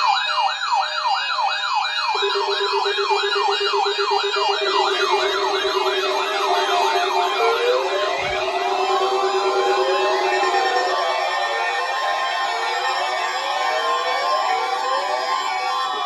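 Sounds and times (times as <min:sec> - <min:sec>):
electronic siren sweeping: 0:00.7 - 0:16.0
gliding synthesizer tones: 0:02.1 - 0:15.7
steady buzzing tone: 0:02.4 - 0:10.7.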